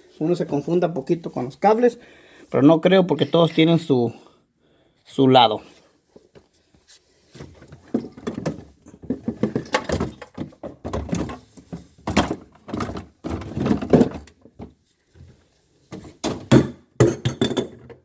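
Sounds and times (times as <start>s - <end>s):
knocks and rattles of refrigerator parts: 7.5s - 14.8s, 15.9s - 18.0s.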